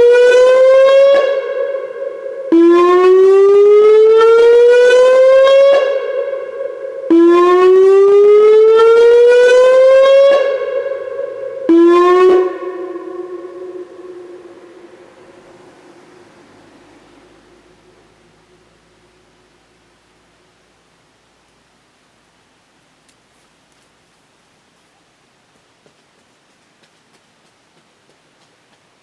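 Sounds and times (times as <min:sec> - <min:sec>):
siren echo: 0:00.0 - 0:19.6
warning siren whooping: 0:00.0 - 0:19.6.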